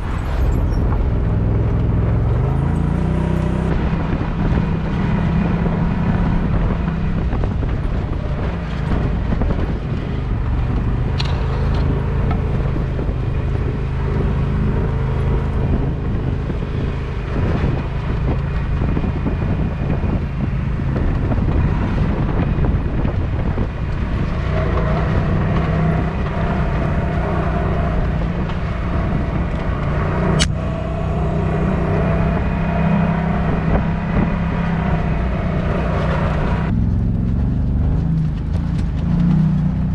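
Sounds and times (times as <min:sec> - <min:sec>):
engine droning while driving: 0:00.0 - 0:39.9
sharp click: 0:30.4 - 0:30.6.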